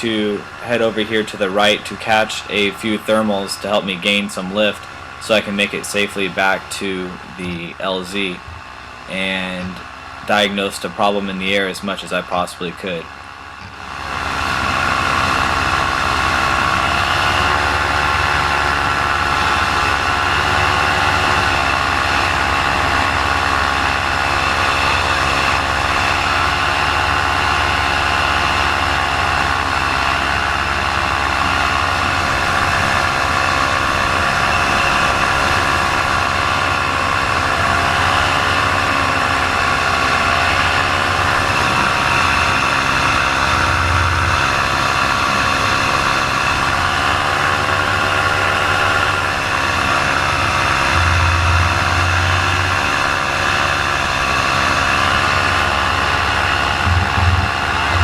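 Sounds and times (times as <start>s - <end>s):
paramotor engine running: 0.0s - 58.0s.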